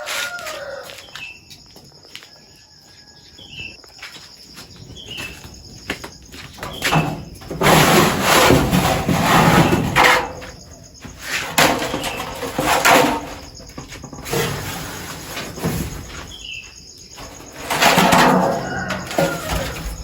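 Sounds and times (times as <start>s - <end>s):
rough scraping of wood: 6.7s - 16.6s, 17.2s - 20.0s.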